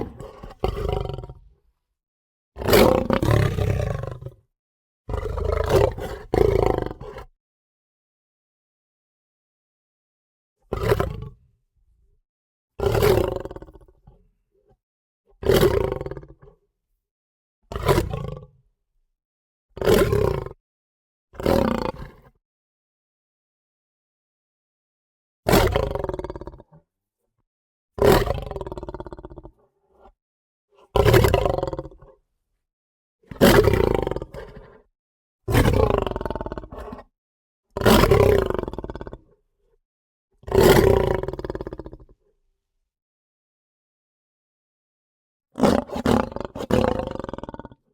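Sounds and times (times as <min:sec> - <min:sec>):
lion roaring: 0:00.0 - 0:01.4, 0:02.6 - 0:04.3, 0:28.1 - 0:29.6, 0:31.0 - 0:32.0, 0:33.4 - 0:34.6, 0:35.5 - 0:37.1, 0:37.8 - 0:39.2, 0:40.5 - 0:42.1, 0:45.6 - 0:47.8.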